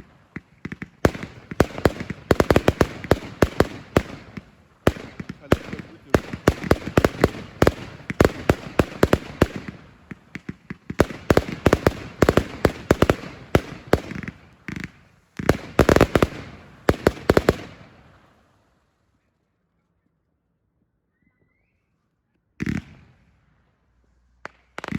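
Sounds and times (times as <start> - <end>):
fireworks bangs: 0.0 - 18.2, 22.6 - 23.4, 24.3 - 24.9.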